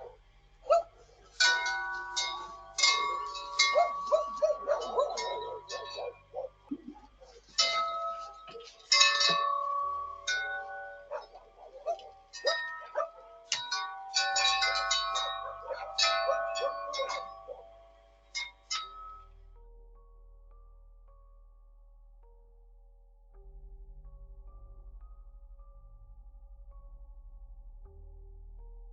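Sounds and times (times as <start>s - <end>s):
metal wind chimes jangling: 0.7s - 19.2s.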